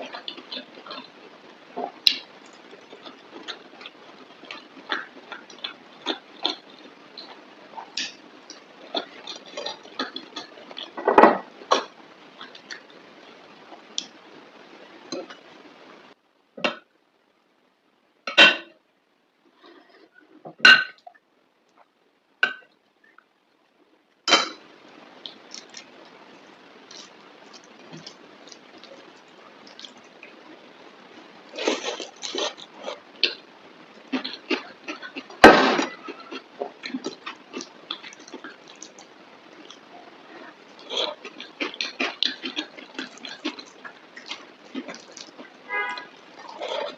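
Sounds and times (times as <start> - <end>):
plate and utensils clattering: 35.4 - 36.4.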